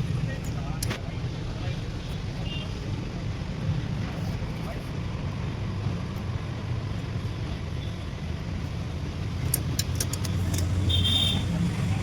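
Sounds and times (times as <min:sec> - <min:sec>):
sharp clicks: 0:09.4 - 0:10.8.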